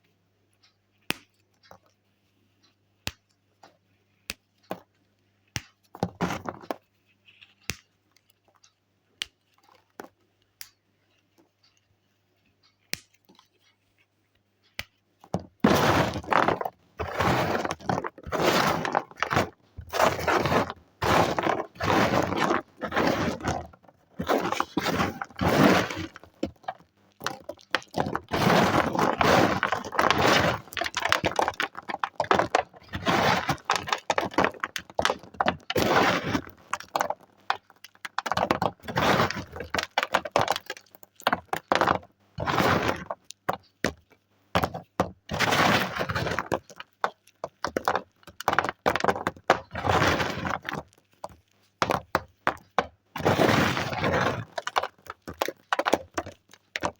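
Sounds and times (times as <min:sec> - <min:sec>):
chalk crackling and cracking: 0:05.2 - 0:44.2.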